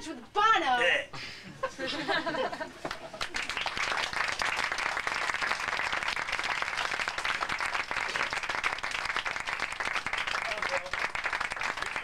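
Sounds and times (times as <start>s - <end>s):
audience applauding: 2.8s - 12.0s.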